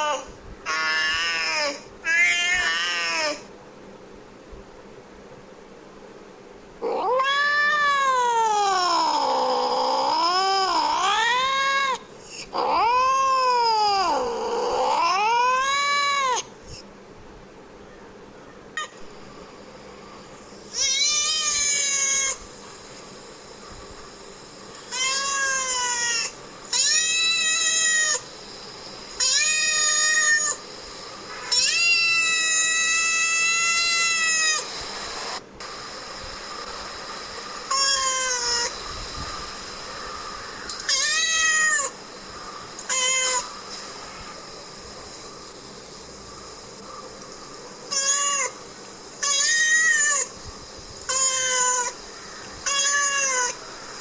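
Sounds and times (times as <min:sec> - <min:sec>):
cat meowing: 0:00.7 - 0:03.4, 0:06.8 - 0:12.0, 0:20.8 - 0:22.4, 0:24.9 - 0:28.2, 0:29.2 - 0:30.6, 0:31.4 - 0:34.6, 0:37.7 - 0:38.7, 0:40.8 - 0:41.9, 0:42.8 - 0:43.5, 0:47.9 - 0:48.6, 0:49.2 - 0:50.3, 0:51.1 - 0:52.0, 0:52.6 - 0:53.6.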